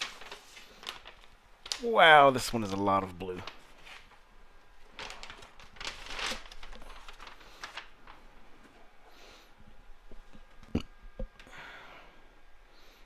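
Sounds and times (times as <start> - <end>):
paper poster rustling: 0.0 - 8.9.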